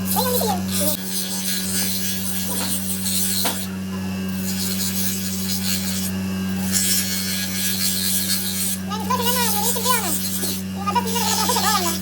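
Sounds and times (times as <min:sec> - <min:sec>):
electric motor humming: 0:00.0 - 0:12.0.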